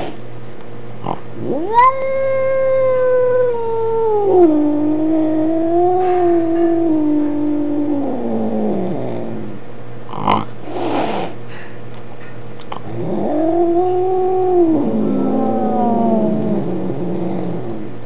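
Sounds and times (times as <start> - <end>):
cat yowling: 1.4 - 9.6, 12.8 - 18.0.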